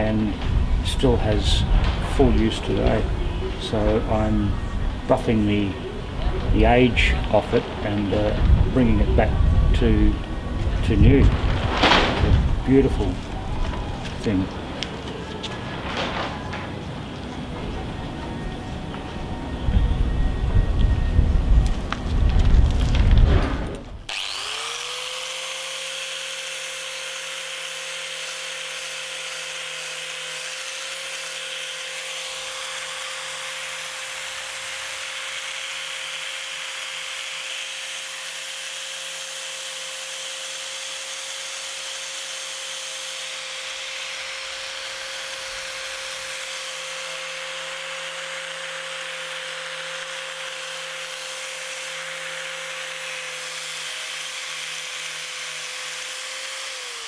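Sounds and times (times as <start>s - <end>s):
buffing wheel whining: 24.1s - 57.0s.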